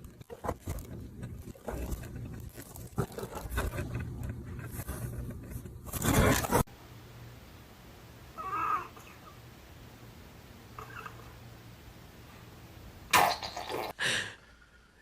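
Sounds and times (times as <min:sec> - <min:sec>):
scraping and crunching: 0:00.0 - 0:06.7.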